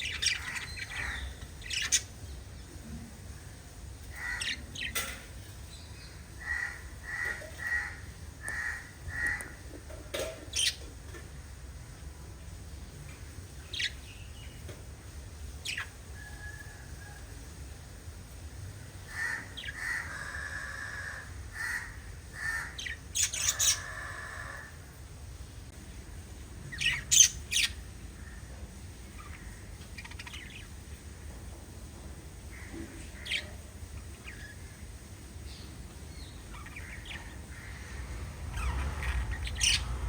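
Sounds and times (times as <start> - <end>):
lovebirds chirping and squawking: 0.0 - 2.4, 4.0 - 10.9, 15.4 - 16.6, 19.0 - 24.7, 26.7 - 28.5, 29.1 - 30.8, 32.6 - 40.0
low steady hum: 35.1 - 40.0.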